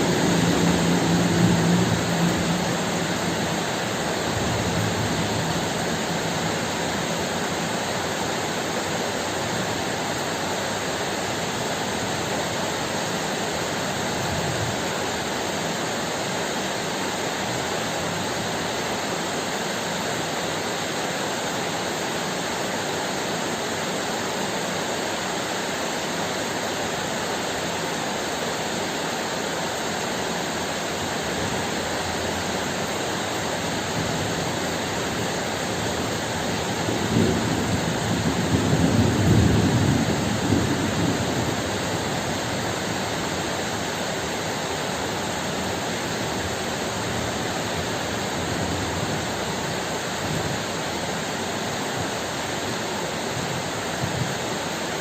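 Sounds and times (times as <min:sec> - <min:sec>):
thunder rolling: 0:00.0 - 0:03.4, 0:35.8 - 0:42.5
heavy rain: 0:00.0 - 0:55.0.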